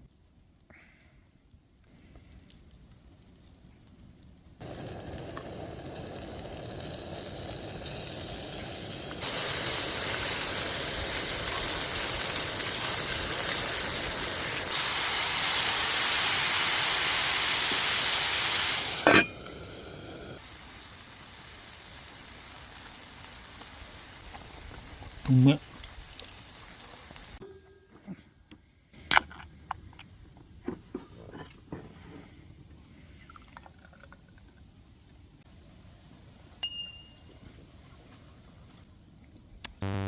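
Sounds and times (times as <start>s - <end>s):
food sizzling in a pan: 4.6s - 27.4s
sharp metallic clink: 19.0s - 19.6s.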